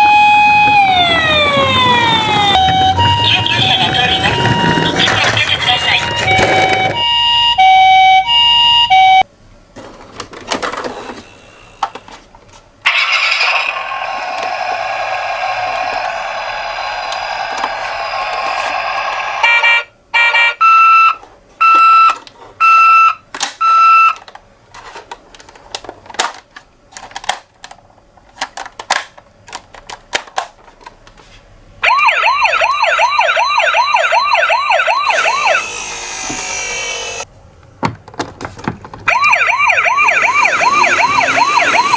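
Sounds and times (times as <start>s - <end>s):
toy electronic siren: 0.0s - 9.2s, 12.9s - 23.0s, 31.8s - 37.3s, 39.1s - 41.9s
raspy electronic sound: 34.9s - 37.2s, 39.2s - 41.9s
steady electronic beeps: 39.9s - 41.9s.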